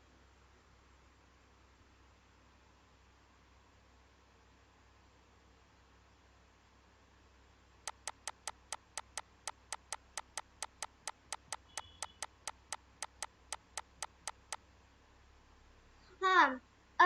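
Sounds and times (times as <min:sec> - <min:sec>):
rapid small clicks: 0:07.9 - 0:14.6.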